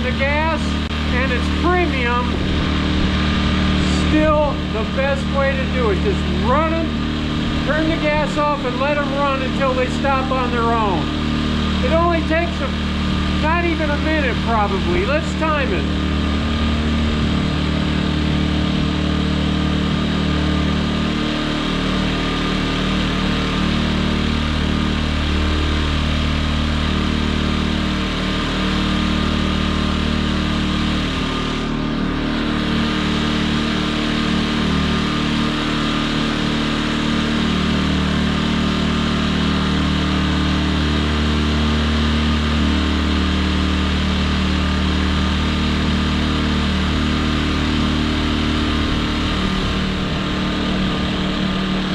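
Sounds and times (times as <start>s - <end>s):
generator engines running: 0.0s - 51.9s.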